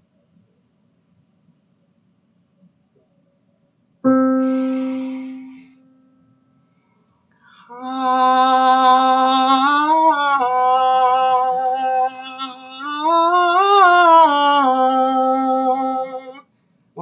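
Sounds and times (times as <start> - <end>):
woman singing vocal exercise: 4.1 - 5.8, 7.6 - 16.4.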